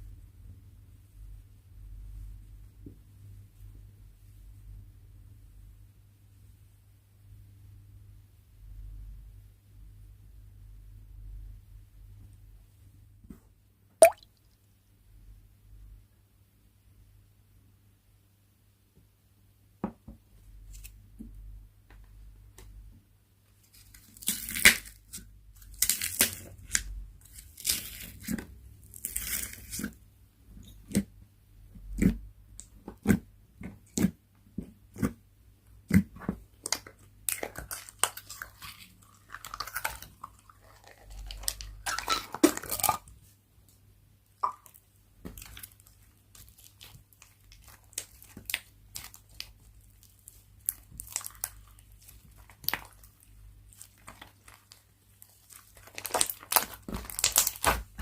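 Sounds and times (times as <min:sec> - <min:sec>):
slime crackling and popping: 0:25.7 - 0:28.2, 0:44.4 - 0:58.0.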